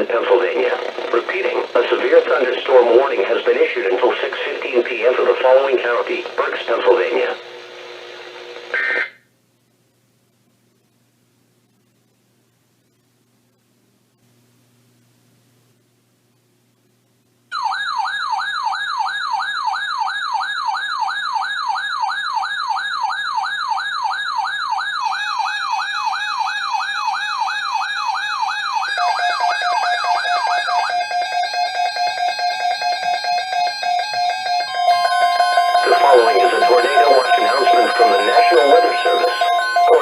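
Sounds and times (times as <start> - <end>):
faint static: 0.0 - 17.6, 34.7 - 40.0
warbling electronic siren alarm: 17.5 - 40.0
rapid steady beeping: 23.8 - 40.0.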